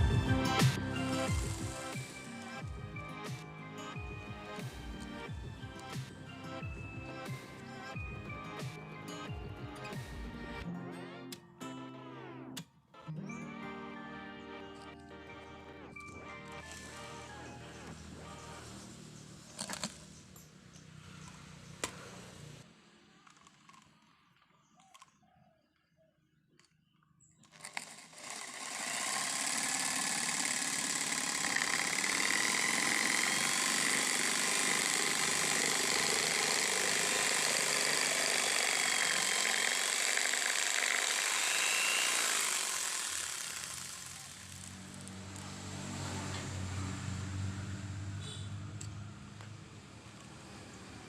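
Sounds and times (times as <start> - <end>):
power tool whirring with whine: 0.0 - 9.3, 15.3 - 22.6, 27.5 - 47.6.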